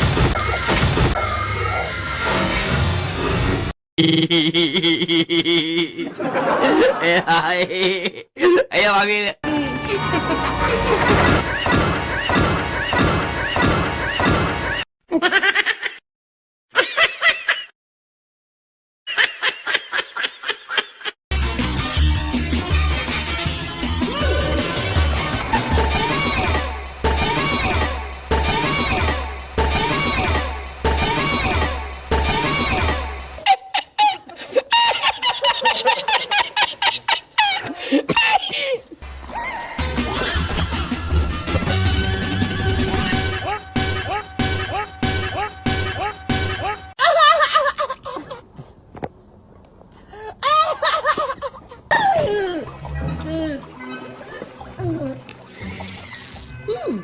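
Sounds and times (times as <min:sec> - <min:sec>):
high-pitched cartoon voice giggling: 0:04.0 - 0:08.7, 0:43.0 - 0:48.5
music: 0:09.4 - 0:14.8, 0:21.3 - 0:33.4, 0:39.0 - 0:46.9, 0:52.6 - 0:57.0
high-pitched cartoon laughter: 0:09.5 - 0:16.0, 0:19.1 - 0:21.2, 0:32.3 - 0:38.6, 0:39.3 - 0:41.1, 0:42.6 - 0:48.5, 0:50.4 - 0:55.1.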